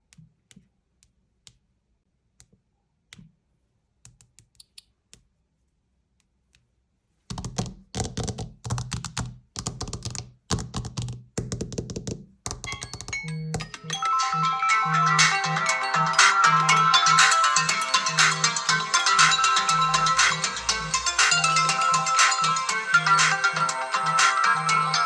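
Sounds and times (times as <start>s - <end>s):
clicks and taps: 0.0s - 1.7s, 2.3s - 3.4s, 7.3s - 13.8s
fast tapping: 7.3s - 13.8s.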